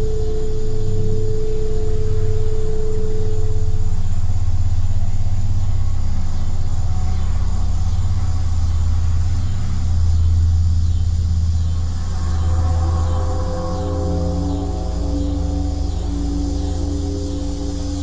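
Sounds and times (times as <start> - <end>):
low rumbling hum: 0.0 - 18.0.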